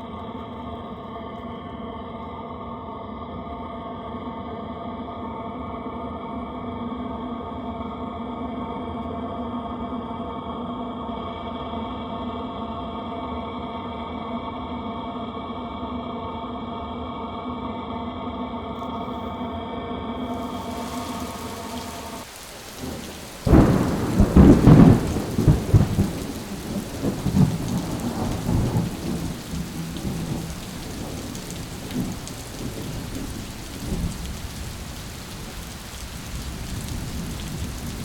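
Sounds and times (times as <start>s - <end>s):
steady rain: 20.2s - 38.0s
thunder clap rumbling: 20.3s - 38.0s.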